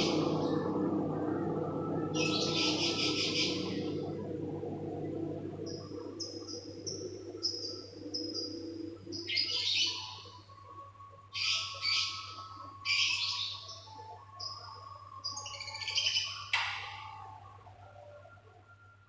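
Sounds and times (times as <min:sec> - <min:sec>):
harsh bird calls: 0:00.0 - 0:10.3
bird chirping: 0:00.0 - 0:10.6, 0:11.4 - 0:17.5
faint steady hum: 0:00.0 - 0:19.0.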